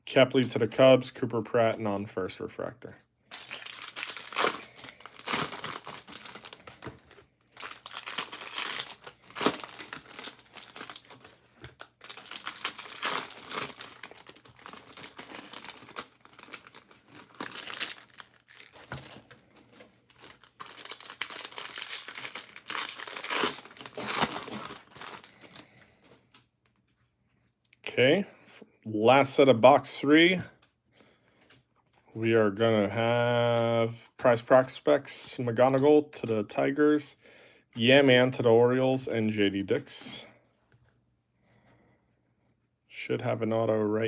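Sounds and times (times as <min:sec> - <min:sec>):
card pack wrappers crinkling and tearing: 0:03.3 - 0:25.8.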